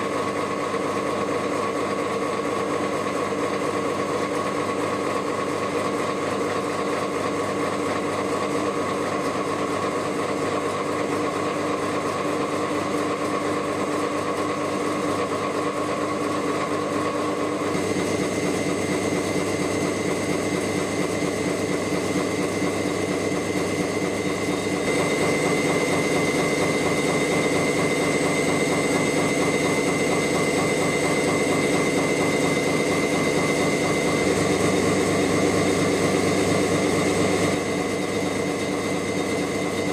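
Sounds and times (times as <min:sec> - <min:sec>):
gear cutting machine whining: 0:17.7 - 0:39.9.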